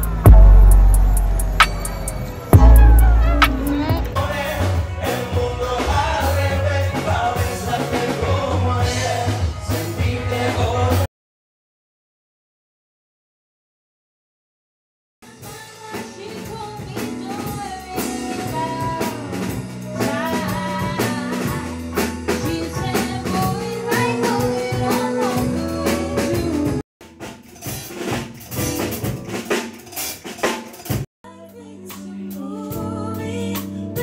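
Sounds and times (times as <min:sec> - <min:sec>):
bass line: 0:00.0 - 0:06.9
drum kit: 0:00.0 - 0:11.1, 0:15.2 - 0:31.1
person singing: 0:00.0 - 0:11.1, 0:15.3 - 0:26.8.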